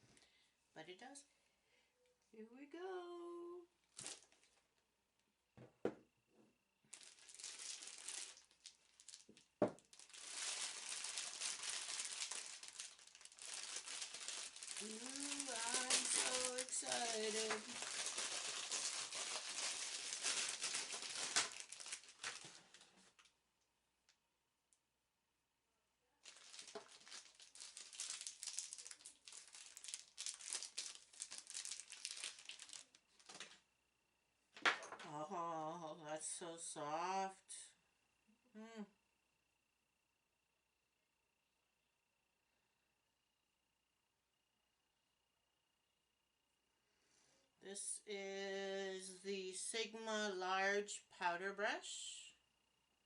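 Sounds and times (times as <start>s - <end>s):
packaging crinkling: 3.8s - 4.6s, 6.9s - 23.4s, 26.2s - 33.6s.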